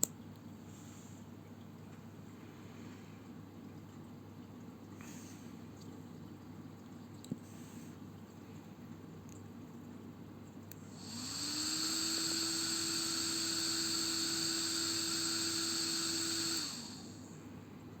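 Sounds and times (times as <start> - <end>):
small electric fan whining: 10.7 - 18.0.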